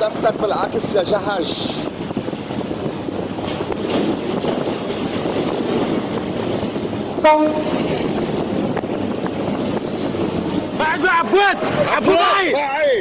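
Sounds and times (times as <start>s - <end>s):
rushing wind: 0.0s - 13.0s
wind buffeting microphone: 0.0s - 13.0s
loud horn blast: 7.2s - 7.9s.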